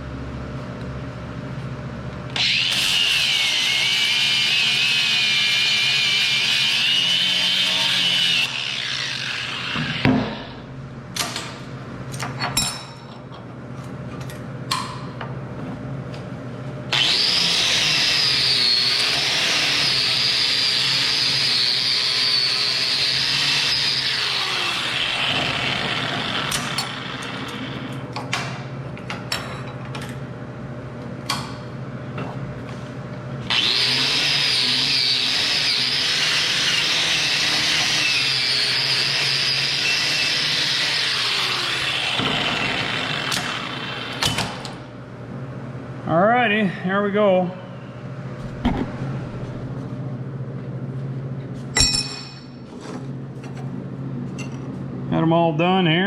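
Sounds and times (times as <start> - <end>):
power tool running: 2.3 - 10.7, 16.9 - 28.1, 33.5 - 44.9.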